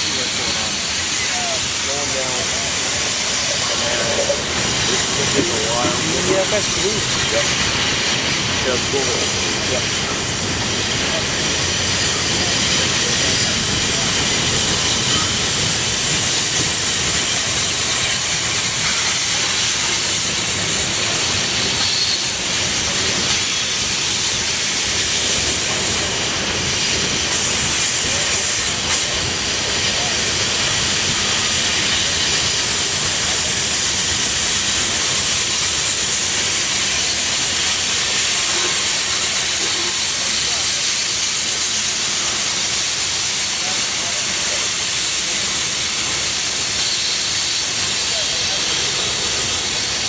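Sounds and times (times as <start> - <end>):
steel wheels hissing on rail: 0.0 - 50.0.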